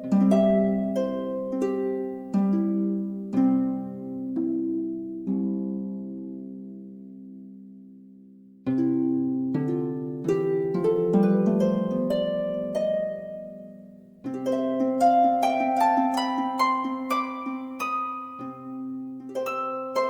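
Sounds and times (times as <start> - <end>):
plucked-string music: 0.0 - 20.0.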